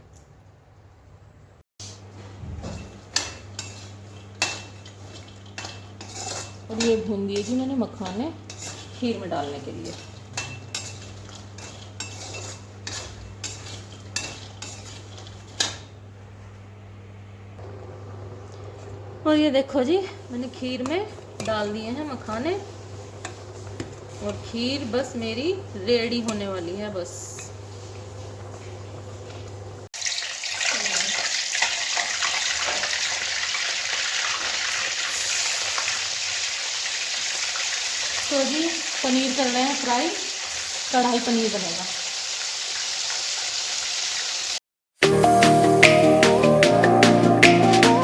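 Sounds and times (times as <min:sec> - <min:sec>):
metal spoon scraping a pan: 0:02.8 - 0:15.9
cheese frying in hot oil: 0:03.0 - 0:16.0, 0:20.5 - 0:44.6.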